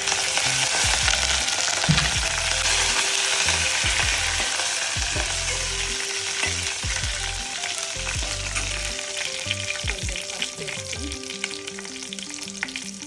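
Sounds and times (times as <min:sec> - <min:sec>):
spices sizzling in hot oil: 0:00.0 - 0:13.0.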